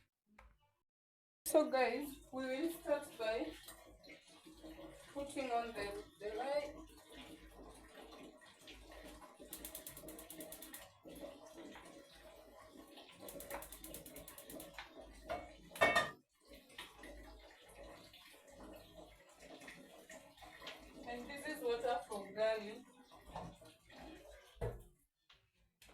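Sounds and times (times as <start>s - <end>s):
gas cooker igniter ticking: 9.5s - 10.8s, 13.2s - 14.8s.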